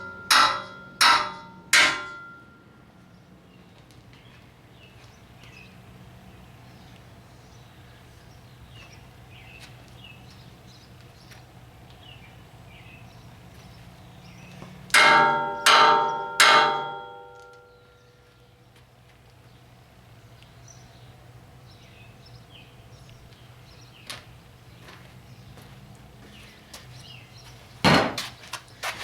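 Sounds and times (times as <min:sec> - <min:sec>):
hammer blows on steel: 0:00.0 - 0:02.6, 0:15.0 - 0:17.8.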